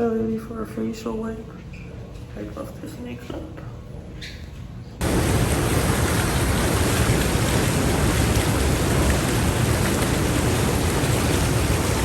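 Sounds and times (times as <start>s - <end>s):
water rushing: 5.0s - 12.0s.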